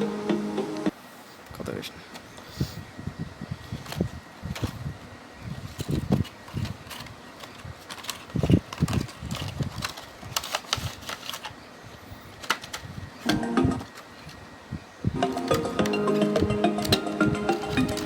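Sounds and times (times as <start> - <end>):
music: 0.0 - 0.9, 13.3 - 13.8, 15.2 - 18.0
packaging clicks and rustles: 5.6 - 14.4, 15.2 - 18.0.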